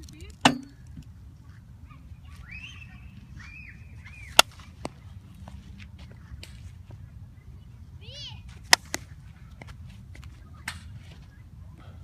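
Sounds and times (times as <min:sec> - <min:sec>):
bat cracking softball: 0:00.4 - 0:01.0, 0:04.0 - 0:05.0, 0:08.5 - 0:11.2.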